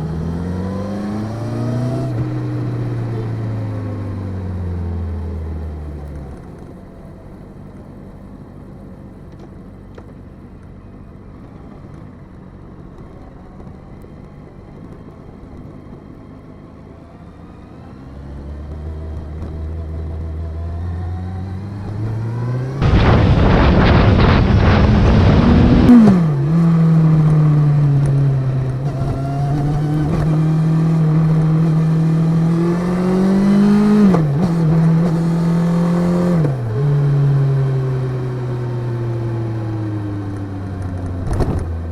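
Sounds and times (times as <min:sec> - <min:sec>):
motorbike engine accelerating: 0:00.0 - 0:07.4, 0:11.1 - 0:41.9
loud rushing noise: 0:22.5 - 0:27.3.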